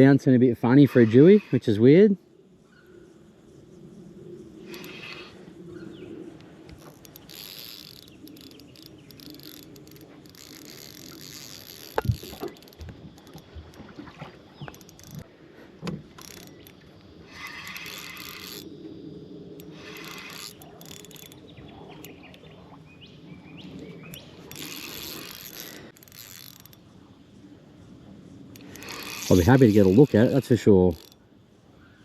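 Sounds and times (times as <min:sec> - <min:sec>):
fishing reel winding: 0:00.6 - 0:01.9, 0:04.6 - 0:05.4, 0:06.8 - 0:13.5, 0:14.7 - 0:15.2, 0:16.1 - 0:18.7, 0:19.6 - 0:22.5, 0:24.1 - 0:27.0, 0:28.5 - 0:31.2.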